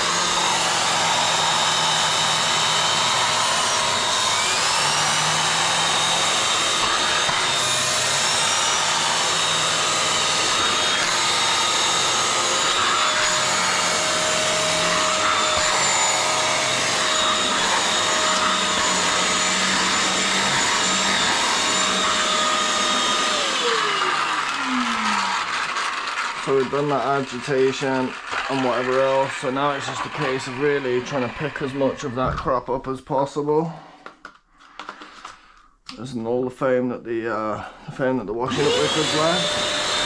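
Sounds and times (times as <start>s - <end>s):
vacuum motor whining: 0.0s - 32.5s, 38.5s - 40.0s.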